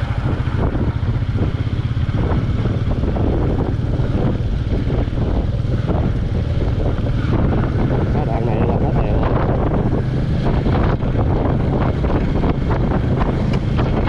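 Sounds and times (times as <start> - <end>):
motorcycle engine running: 0.0 - 14.0
wind noise on microphone: 0.0 - 14.0.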